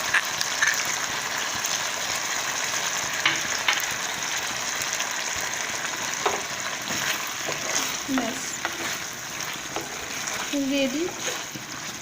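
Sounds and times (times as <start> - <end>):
vegetables sizzling in a pan: 0.0 - 12.0
spoon knocking against pan: 6.2 - 6.5.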